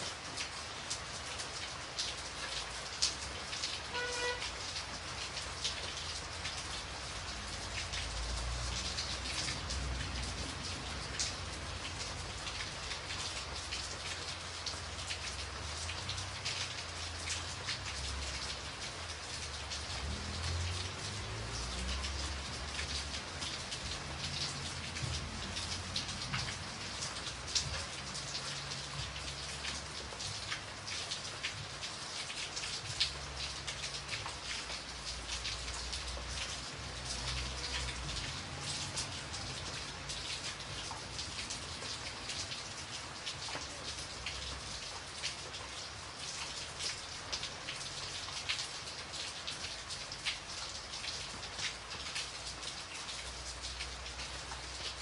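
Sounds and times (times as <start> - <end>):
rain pattering on a surface: 0.0 - 55.0.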